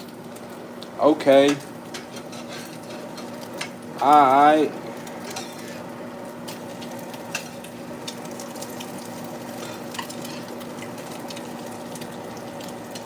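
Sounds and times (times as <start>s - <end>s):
food sizzling in a pan: 0.0s - 13.0s.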